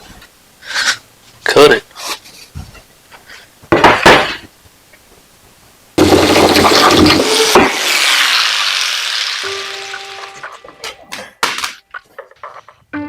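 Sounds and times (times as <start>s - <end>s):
power saw cutting plywood: 6.8s - 10.1s.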